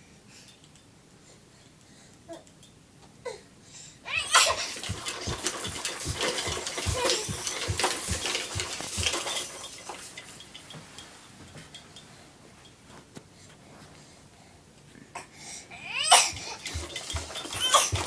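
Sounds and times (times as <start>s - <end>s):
baby squealing: 4.1s - 4.6s, 15.8s - 16.4s, 17.5s - 18.0s
plastic toys clattering: 4.2s - 10.7s, 16.0s - 18.0s
baby bouncing thumps: 4.2s - 10.8s, 15.9s - 18.0s.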